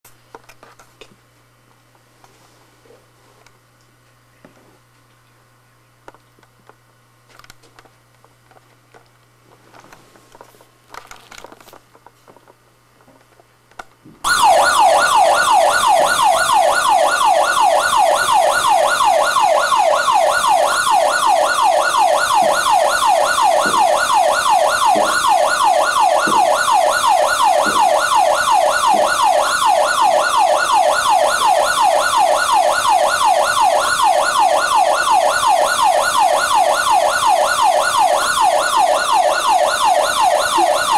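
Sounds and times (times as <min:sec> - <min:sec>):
fire alarm siren sweeping: 0:14.2 - 0:40.9.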